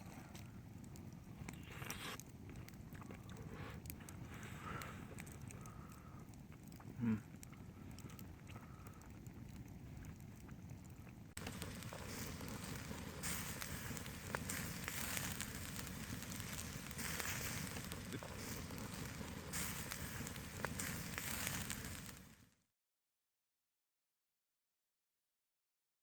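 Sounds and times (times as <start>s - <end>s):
campfire crackling and popping: 0.0s - 22.5s
hiss of flame: 1.0s - 2.3s, 11.3s - 22.6s.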